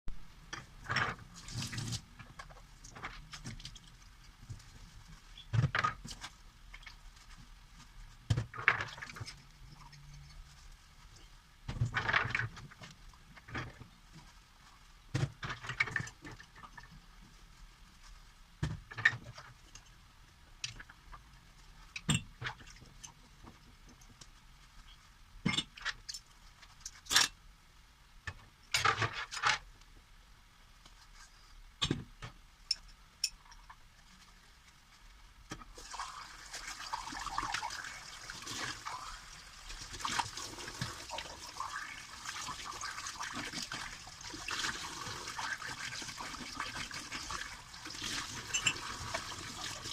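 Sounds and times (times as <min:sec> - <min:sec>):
tap water running onto dishes: 0:35.7 - 0:49.9.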